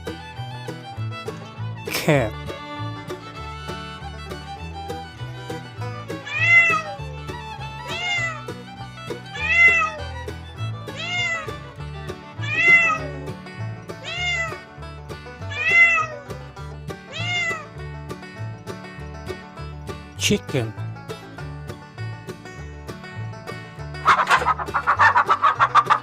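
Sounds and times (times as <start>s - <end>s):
background music: 0.0s - 26.0s
cat meowing: 6.2s - 7.0s, 7.8s - 8.4s, 9.3s - 10.1s, 10.8s - 11.6s, 12.3s - 13.2s, 14.0s - 14.6s, 15.4s - 16.3s, 17.1s - 17.7s.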